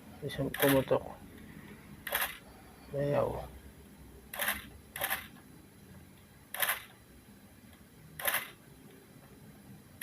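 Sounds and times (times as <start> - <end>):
camera shutter clicking: 2.1 - 2.4, 4.3 - 5.3, 6.6 - 6.9, 8.2 - 8.6.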